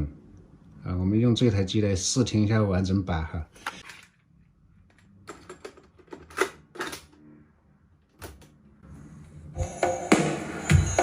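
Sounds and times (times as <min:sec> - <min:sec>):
tape playback music: 0:08.8 - 0:11.0.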